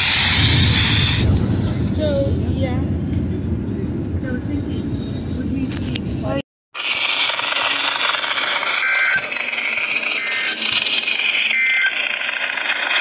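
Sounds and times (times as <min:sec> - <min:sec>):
radio static hiss: 0:06.8 - 0:13.0.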